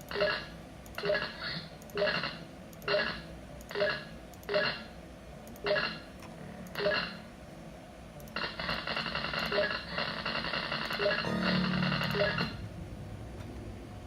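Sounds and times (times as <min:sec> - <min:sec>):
glitchy electronic buzzing: 0:11.0 - 0:12.7.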